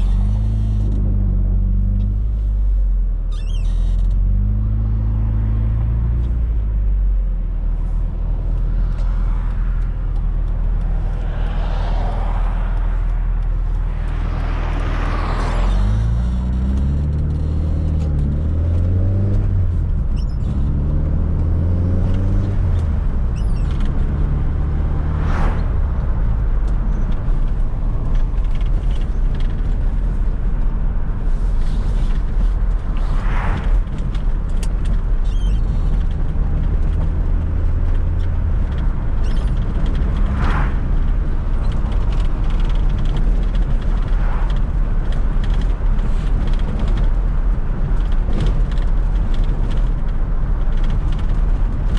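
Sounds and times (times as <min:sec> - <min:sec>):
car engine revving: 0:07.8 - 0:30.8.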